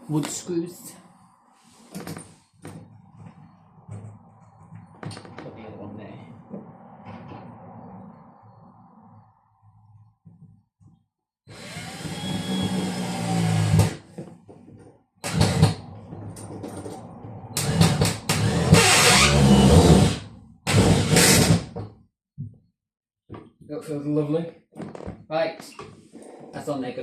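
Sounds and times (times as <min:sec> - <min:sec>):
drill driving screws into wood: 0:11.5 - 0:14.1, 0:15.2 - 0:15.8, 0:17.6 - 0:21.7.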